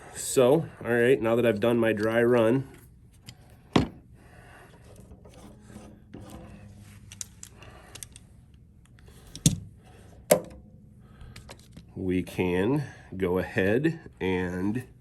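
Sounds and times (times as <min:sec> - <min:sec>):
rubbing and shuffling on workbench: 0:01.3 - 0:08.2.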